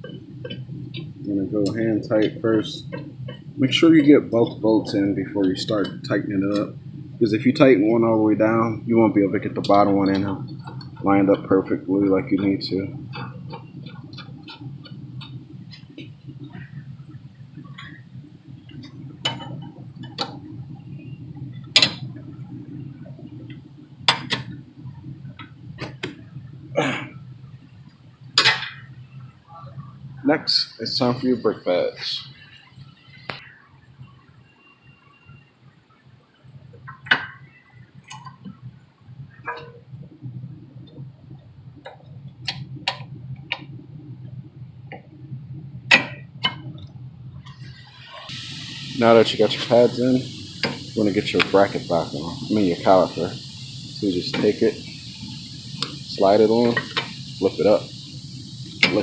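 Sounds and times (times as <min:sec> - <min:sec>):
steady low hum: 0:00.0 - 0:34.3, 0:37.8 - 0:59.0.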